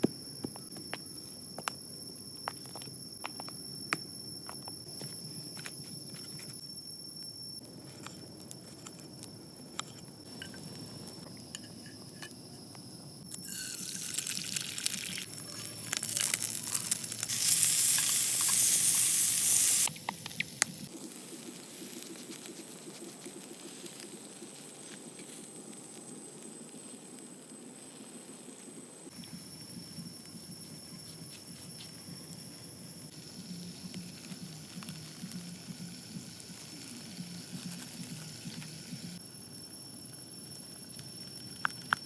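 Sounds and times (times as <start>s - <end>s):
food sizzling over a fire: 13.3s - 21.0s, 33.1s - 39.2s
campfire crackling and popping: 13.4s - 21.0s, 33.1s - 39.2s.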